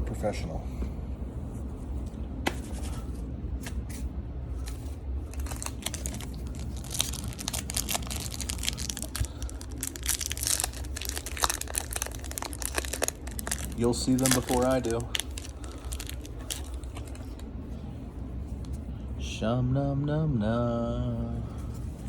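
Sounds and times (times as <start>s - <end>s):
steady low hum: 0.0s - 22.0s
foil wrapper crinkling: 5.3s - 17.4s.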